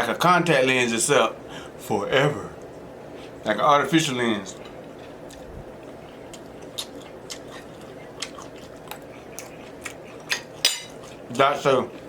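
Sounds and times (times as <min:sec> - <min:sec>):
chewing with wet mouth clicks: 0:04.6 - 0:11.3.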